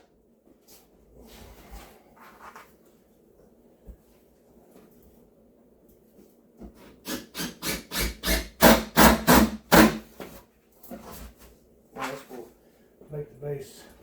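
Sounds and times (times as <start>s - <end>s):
hammer striking wood: 7.1s - 10.1s.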